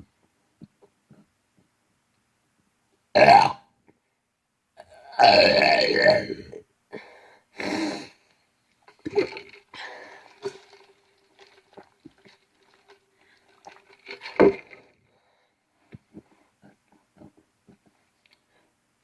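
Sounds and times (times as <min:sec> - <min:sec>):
throaty sound: 0:08.9 - 0:15.1.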